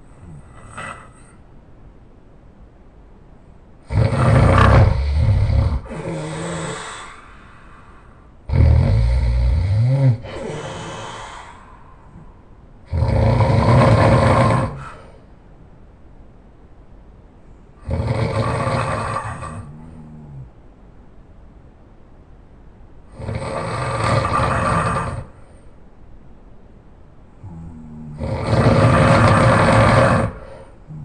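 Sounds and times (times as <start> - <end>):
person snoring loudly: 3.8 - 7.3, 8.5 - 12.2, 12.9 - 15.2, 17.8 - 20.5, 23.1 - 25.4, 27.4 - 31.0.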